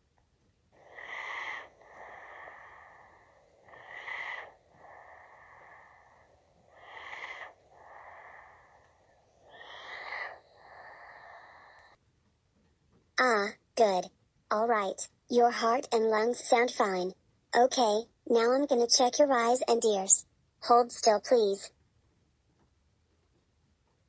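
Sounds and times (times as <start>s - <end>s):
person breathing deeply: 0.7s - 12.0s.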